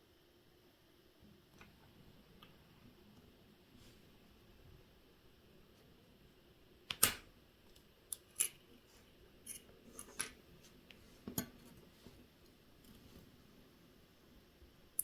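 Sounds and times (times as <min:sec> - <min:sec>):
metal watch parts clicking: 0:08.1 - 0:08.6.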